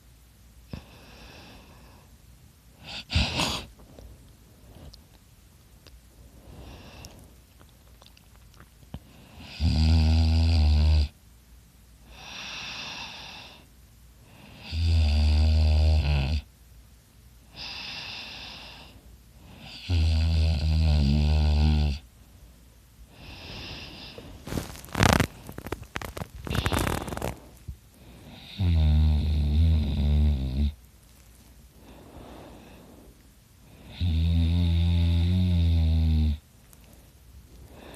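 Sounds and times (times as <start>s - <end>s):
man snoring loudly: 9.4s - 11.1s, 14.6s - 16.4s, 19.7s - 22.0s, 28.3s - 30.8s, 33.9s - 36.4s
breathy out-breath: 31.8s - 33.2s, 37.6s - 37.9s.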